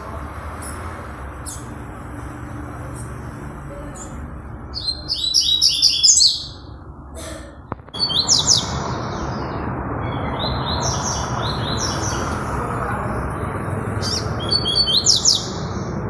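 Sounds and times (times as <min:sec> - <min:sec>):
steady background noise: 0:00.0 - 0:16.0
songbird chirping: 0:03.8 - 0:06.8.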